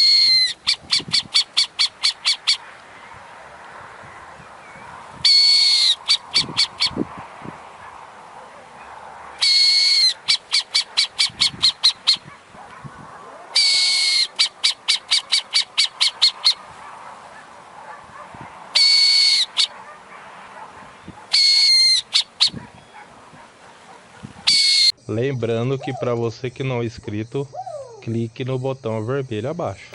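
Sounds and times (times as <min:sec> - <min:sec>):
owl high-pitched call: 0:00.0 - 0:03.2, 0:04.6 - 0:07.0, 0:09.3 - 0:12.4, 0:13.5 - 0:16.7, 0:18.7 - 0:19.8, 0:21.0 - 0:23.1, 0:24.4 - 0:25.0.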